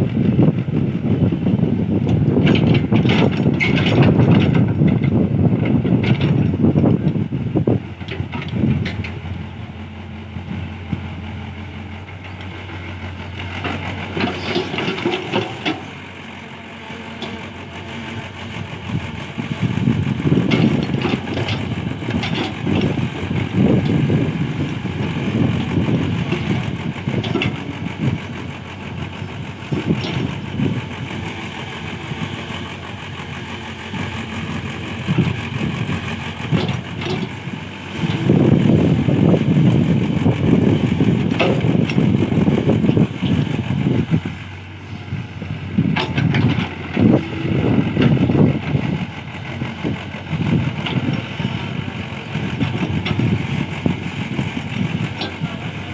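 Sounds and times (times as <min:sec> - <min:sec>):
excavator diesel engine running: 0:00.0 - 0:55.9.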